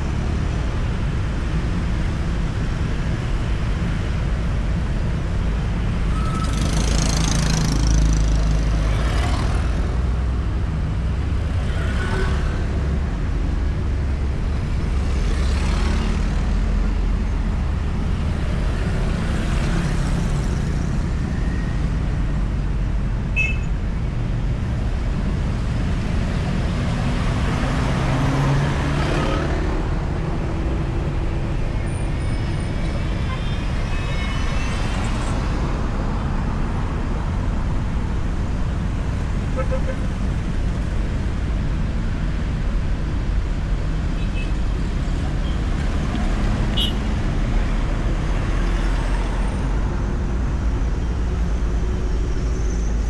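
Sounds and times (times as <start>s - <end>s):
highway traffic rumble: 0.0s - 53.0s
vehicles passing by: 0.0s - 53.0s.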